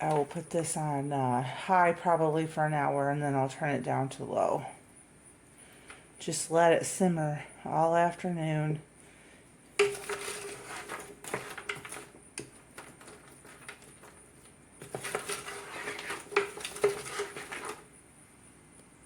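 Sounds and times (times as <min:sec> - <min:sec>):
vegetables sauteing: 0:09.7 - 0:18.1
utensil scraping metal pot: 0:09.8 - 0:18.0.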